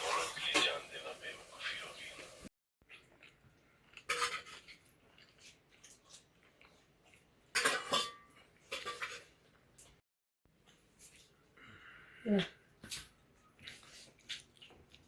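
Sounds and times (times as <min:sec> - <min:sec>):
dishes and utensils clinking: 0:00.0 - 0:01.3, 0:04.0 - 0:04.8, 0:07.6 - 0:10.0.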